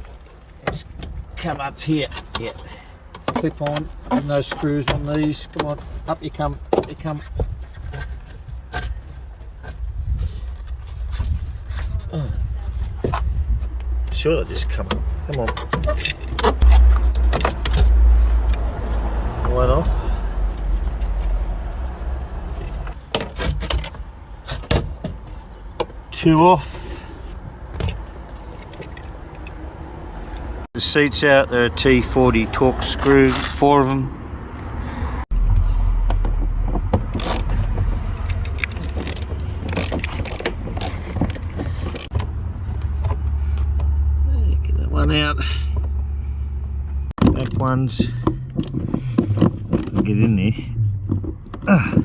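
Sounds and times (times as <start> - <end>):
low handling rumble: 9.8 - 23.1, 33.8 - 52.0
trim knocking: 47.2 - 52.0.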